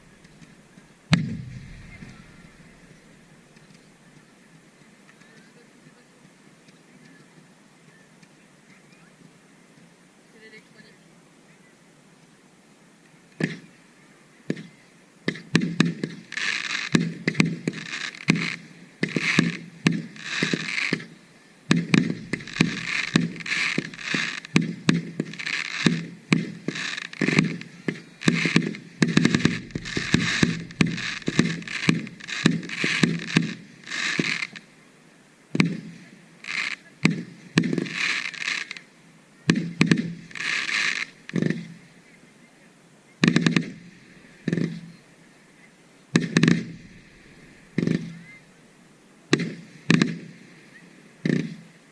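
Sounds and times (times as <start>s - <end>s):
firework shells bursting: 0.0s - 3.8s, 15.3s - 21.1s, 21.7s - 34.6s, 46.2s - 48.2s.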